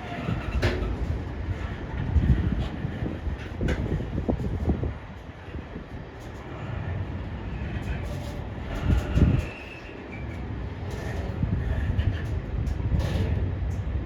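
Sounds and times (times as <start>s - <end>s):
freight train wheels rumbling: 0.0s - 14.0s
train clicks and clatter: 0.0s - 14.0s.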